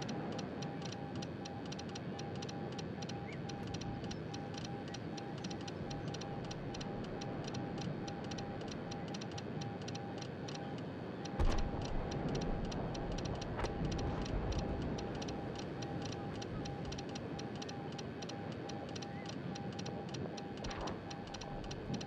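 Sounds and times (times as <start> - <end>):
fast even ticking: 0.1 - 22.0
low rumble: 11.4 - 16.1
morse code beeping: 11.4 - 22.0.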